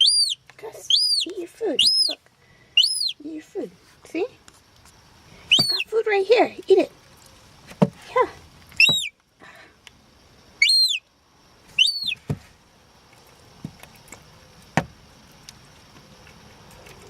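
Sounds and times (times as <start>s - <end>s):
gull chick peeping: 0.0s - 2.2s, 2.8s - 3.2s, 5.5s - 5.9s, 8.8s - 9.2s, 10.6s - 11.0s, 11.8s - 12.2s.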